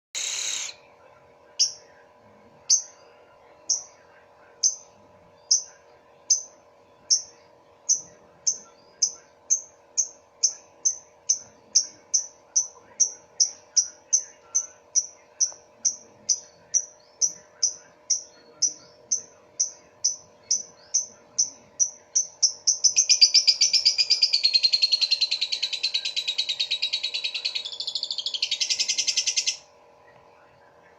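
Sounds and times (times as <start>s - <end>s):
bird chattering trill: 0.2s - 0.8s, 2.7s - 3.0s, 6.3s - 29.6s.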